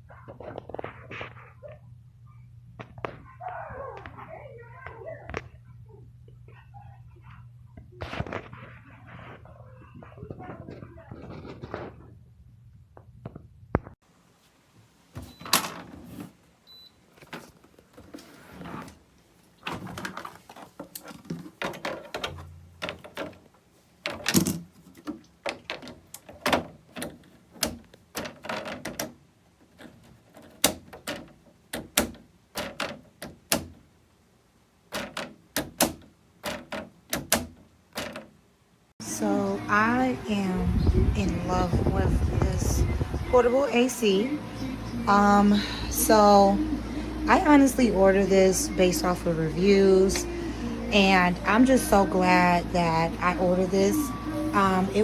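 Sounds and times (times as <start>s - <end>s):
objects knocking and thudding: 15.2s - 16.4s, 17.1s - 33.9s, 34.9s - 38.4s.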